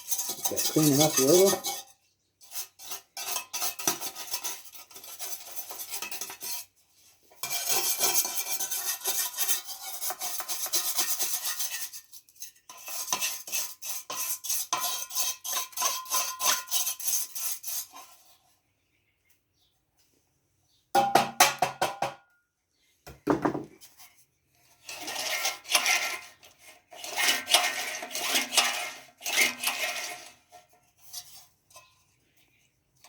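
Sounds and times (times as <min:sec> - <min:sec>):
brush scrubbing and scraping: 0:00.0 - 0:18.5, 0:23.8 - 0:33.0.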